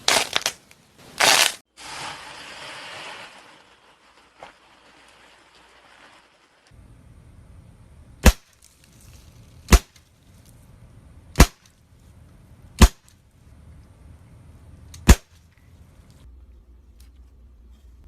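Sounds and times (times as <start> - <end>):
sharp loud bangs: 8.2 - 8.6, 9.7 - 10.0, 11.4 - 11.7, 12.8 - 13.1, 15.0 - 15.4.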